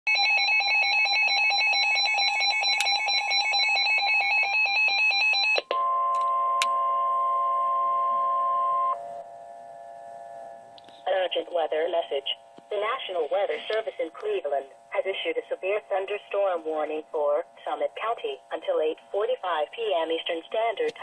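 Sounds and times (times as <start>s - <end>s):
steady warning tone: 0.7s - 20.7s
faint steady hum: 2.5s - 21.0s.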